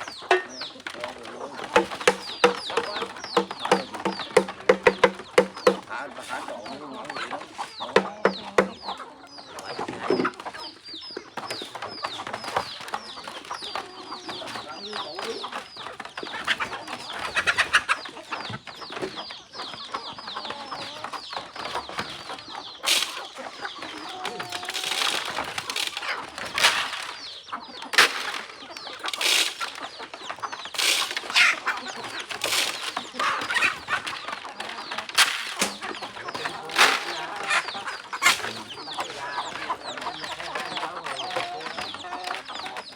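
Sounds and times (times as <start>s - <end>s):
chickens clucking: 0.0s - 42.9s
rustling scratches: 28.0s - 41.2s.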